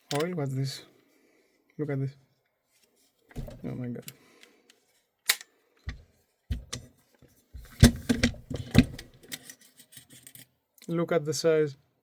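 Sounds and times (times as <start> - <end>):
sharp clicks of rifle parts: 5.2 - 5.5.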